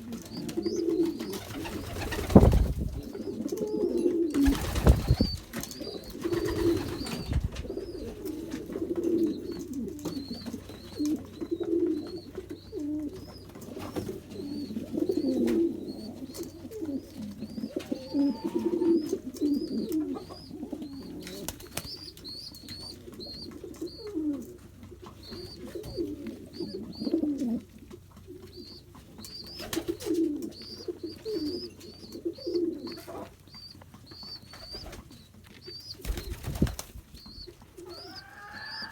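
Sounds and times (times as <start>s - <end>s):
pigeons cooing: 0.0s - 38.9s
bird chirping: 9.1s - 24.3s, 25.1s - 27.4s, 28.3s - 38.9s.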